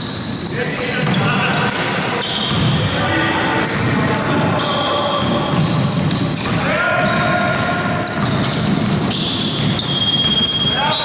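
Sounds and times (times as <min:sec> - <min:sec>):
shoe squeals: 0:00.0 - 0:02.8, 0:03.4 - 0:11.0
players' voices: 0:00.5 - 0:08.8
basketball bouncing on court: 0:01.0 - 0:02.8, 0:03.6 - 0:10.8.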